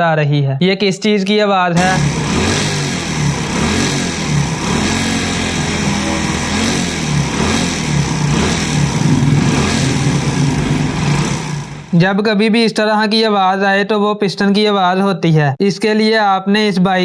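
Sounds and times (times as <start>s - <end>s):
motorcycle engine running: 1.8s - 12.0s.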